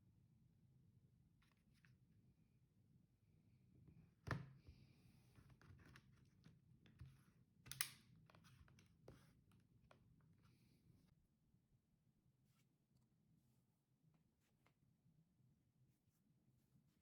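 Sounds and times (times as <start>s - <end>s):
laptop handling clicks: 7.7s - 8.0s.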